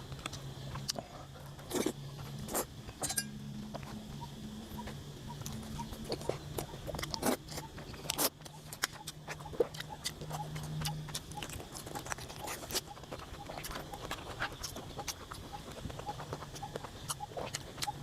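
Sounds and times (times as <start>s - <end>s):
steady low hum: 0.0s - 18.0s
crisp chewing clicks: 0.1s - 3.0s, 4.8s - 18.0s.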